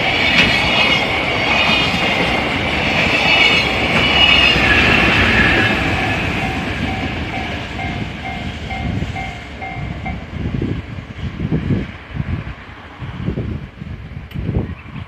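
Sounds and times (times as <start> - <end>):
freight train wagons clattering: 0.0 - 10.3
level-crossing warning bell: 0.0 - 10.3.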